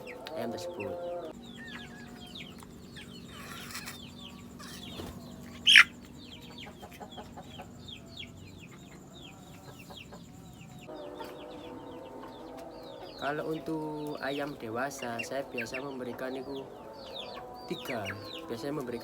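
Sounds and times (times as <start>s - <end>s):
chicks peeping: 0.0s - 19.0s
chick shrill cry: 5.7s - 5.9s.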